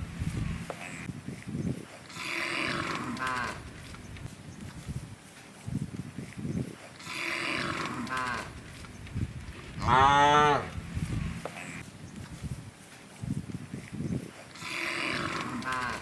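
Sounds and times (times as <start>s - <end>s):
cows mooing: 2.1s - 3.7s, 7.0s - 8.6s, 9.8s - 10.8s, 14.5s - 16.0s.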